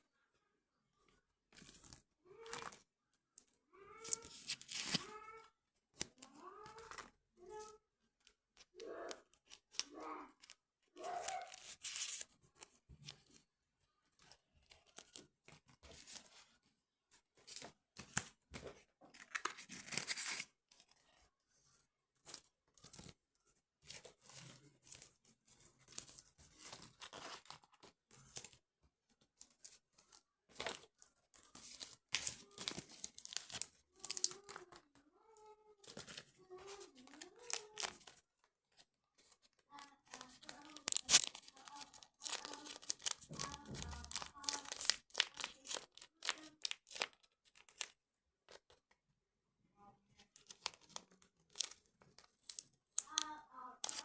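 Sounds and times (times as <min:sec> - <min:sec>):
crackling rustling handling noise: 0:01.0 - 0:49.1, 0:50.0 - 0:54.0
faint voice: 0:08.8 - 0:10.4, 0:53.0 - 0:54.0.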